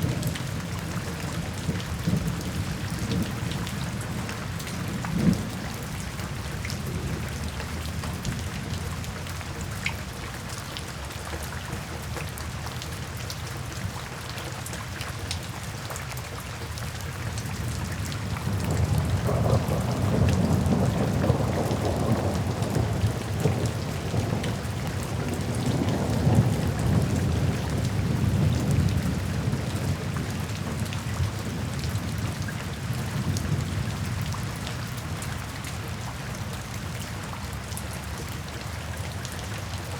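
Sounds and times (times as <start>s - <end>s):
steady rain falling: 0.0s - 39.9s
thunder rumbling: 18.2s - 30.8s.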